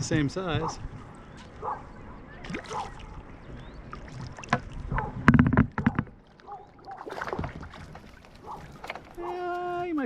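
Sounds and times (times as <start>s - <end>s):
knocks and clicks in a kayak: 4.4s - 9.8s.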